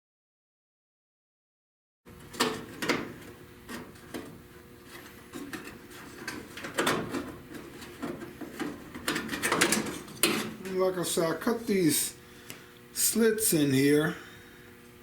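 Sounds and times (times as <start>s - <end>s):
sheet metal knocks and scrapes: 2.3s - 10.6s.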